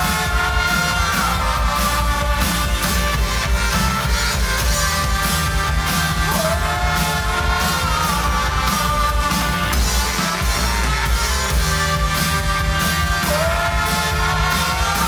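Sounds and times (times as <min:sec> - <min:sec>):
rock music with singing: 0:00.0 - 0:15.0.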